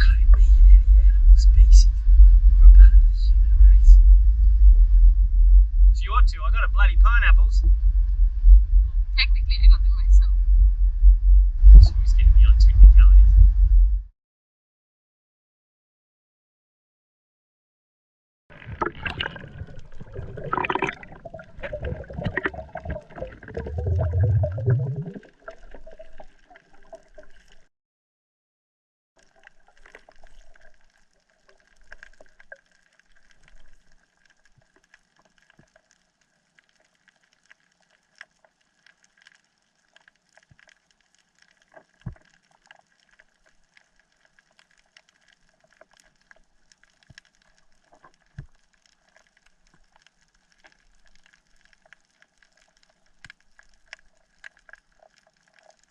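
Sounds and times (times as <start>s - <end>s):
faint hum: 0.0s - 14.1s
water splashing and gurgling: 18.5s - 27.7s, 29.2s - 55.9s.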